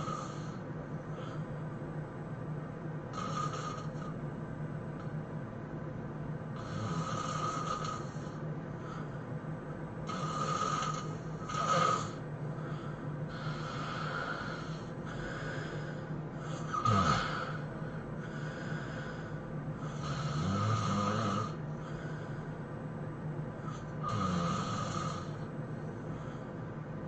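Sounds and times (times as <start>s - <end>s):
person snoring heavily: 0.0s - 0.6s, 3.1s - 4.2s, 6.6s - 9.1s, 10.0s - 22.4s, 23.6s - 25.4s.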